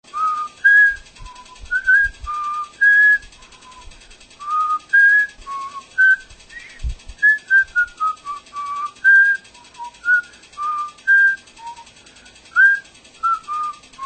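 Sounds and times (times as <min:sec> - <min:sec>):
person whistling a tune: 0:00.1 - 0:14.0.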